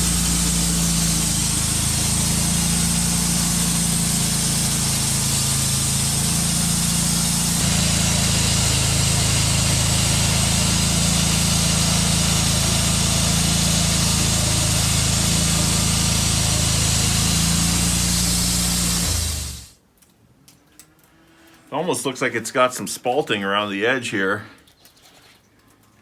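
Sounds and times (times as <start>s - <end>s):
band sawmill cutting wood: 0.0s - 19.8s.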